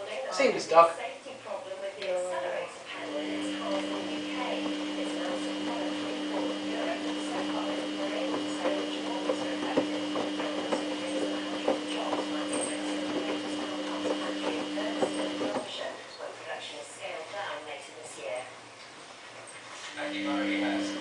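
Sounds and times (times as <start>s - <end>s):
washing machine motor hum: 2.9s - 15.9s, 19.9s - 21.0s.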